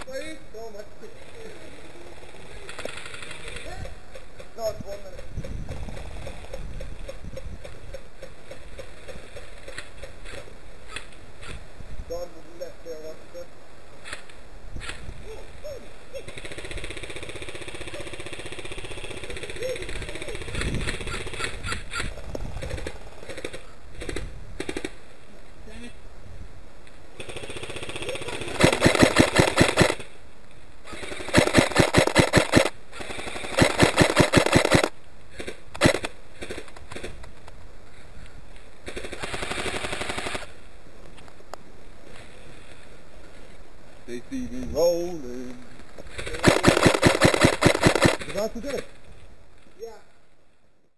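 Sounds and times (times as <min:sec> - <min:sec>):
airsoft gun full-auto burst: 0:16.3 - 0:21.8, 0:27.2 - 0:30.1, 0:30.9 - 0:34.9, 0:35.8 - 0:37.1, 0:38.8 - 0:40.6, 0:46.2 - 0:48.3
sharp gun cracks: 0:27.2 - 0:30.1, 0:30.9 - 0:37.4, 0:46.2 - 0:48.9.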